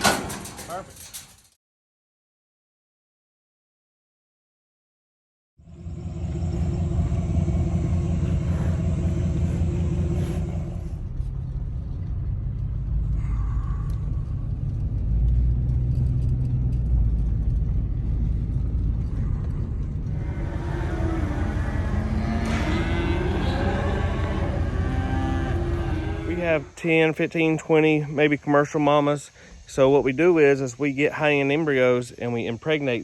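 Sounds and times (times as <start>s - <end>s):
vehicle engine running: 5.6s - 26.7s.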